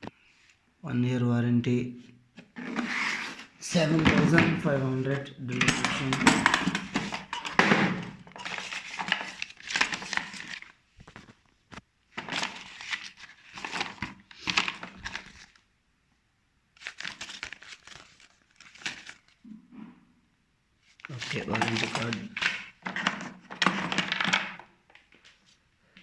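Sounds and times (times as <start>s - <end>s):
packaging rustling and crinkling: 2.6s - 15.6s, 16.8s - 19.4s, 20.8s - 25.6s.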